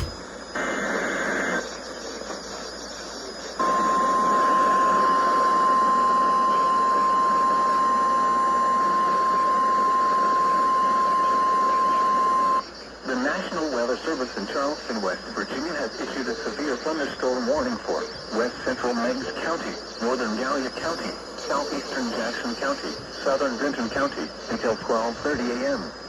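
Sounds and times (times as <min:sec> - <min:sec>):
digital header burst: 0:00.0 - 0:01.3
steady warning alarm tone: 0:00.0 - 0:12.7
radio static: 0:00.0 - 0:26.0.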